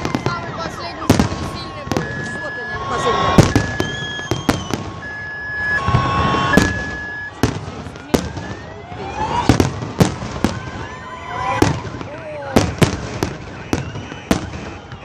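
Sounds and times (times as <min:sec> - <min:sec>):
whistling firework shells: 0:00.0 - 0:08.3, 0:11.5 - 0:15.0
fireworks bangs: 0:00.0 - 0:15.0.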